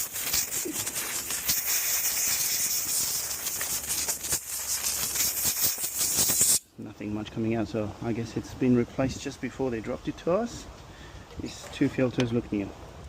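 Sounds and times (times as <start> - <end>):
compressed air blow gun hissing: 0.0 - 6.7.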